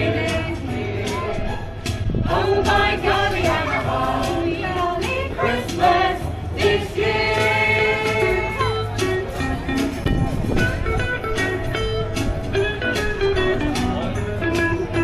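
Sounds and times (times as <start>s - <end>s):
group singing a carol: 0.0s - 9.0s.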